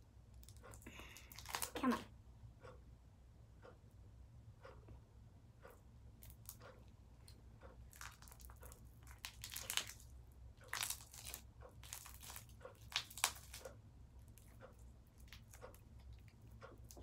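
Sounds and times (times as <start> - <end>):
slime squishing and crackling: 0.4 - 2.0, 7.8 - 17.0.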